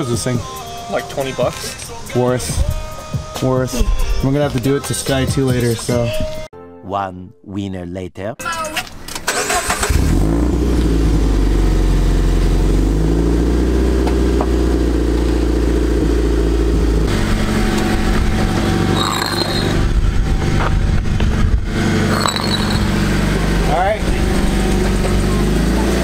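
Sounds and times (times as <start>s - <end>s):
car engine through loud exhaust: 9.9s - 26.0s.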